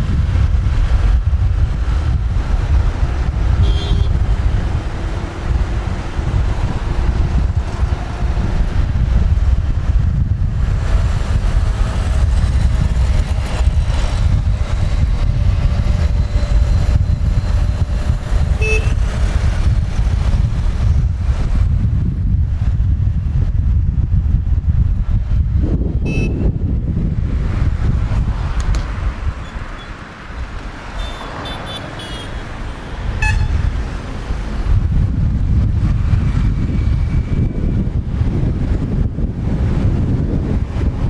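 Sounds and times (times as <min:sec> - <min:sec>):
heavy road traffic rumble: 0:00.0 - 0:41.0
passing engines: 0:00.0 - 0:41.0
wind on microphone: 0:00.0 - 0:41.0
short horn toot: 0:03.6 - 0:04.2, 0:18.6 - 0:19.0, 0:26.0 - 0:26.5, 0:33.2 - 0:33.7.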